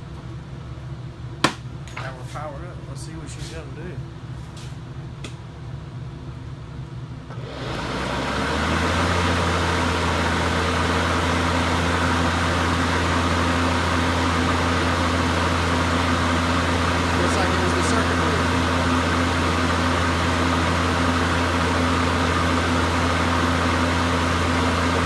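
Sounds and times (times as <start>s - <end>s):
lawnmower electric motor running: 7.2s - 25.0s.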